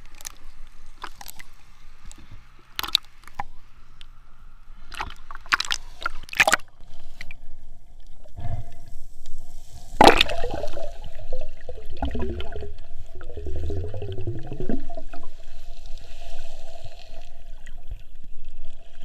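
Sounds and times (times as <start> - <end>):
water splashing: 0.0 - 3.5, 4.8 - 6.7, 9.9 - 15.2
bubbles gurgling: 10.0 - 15.3.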